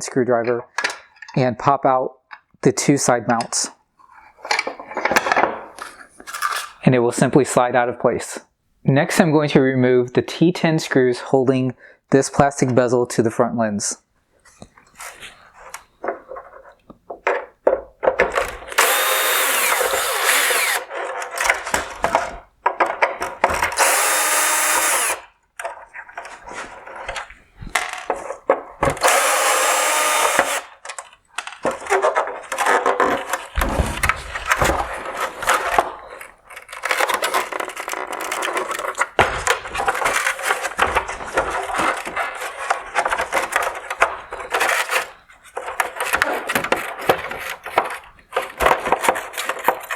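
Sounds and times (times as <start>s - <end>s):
clicks and scrapes of parts: 0.7s - 1.4s, 4.0s - 6.8s, 14.4s - 49.9s
power screwdriver running: 18.7s - 20.9s, 23.6s - 25.3s, 29.0s - 30.8s.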